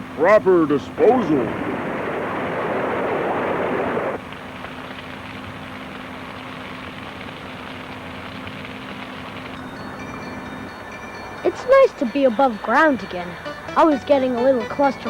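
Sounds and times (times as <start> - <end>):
low machine hum: 0.0 - 15.0
loud rushing noise: 1.1 - 4.2.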